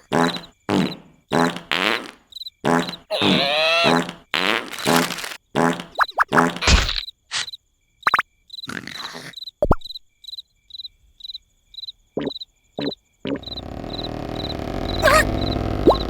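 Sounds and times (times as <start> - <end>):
crickets chirping: 0.0 - 4.1, 6.0 - 16.0
cartoon pops and clicks: 2.8 - 7.5, 9.6 - 10.0, 12.2 - 13.5
loud steady noise: 13.4 - 16.0.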